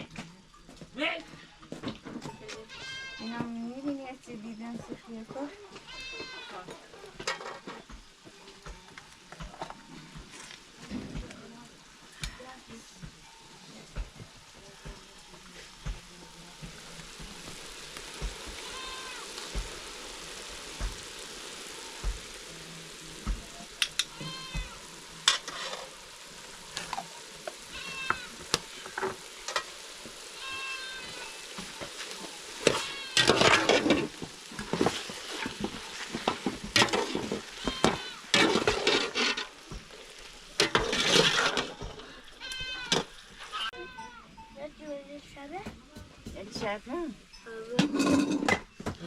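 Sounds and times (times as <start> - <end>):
meat sizzling in a pot: 0.0 - 49.0
stirring in a pot: 13.8 - 43.9.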